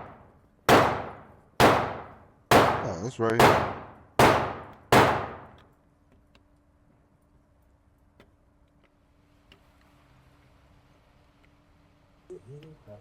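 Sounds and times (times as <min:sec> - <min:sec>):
pistol shots echoing: 0:00.0 - 0:05.6
faint steady hum: 0:00.0 - 0:13.0.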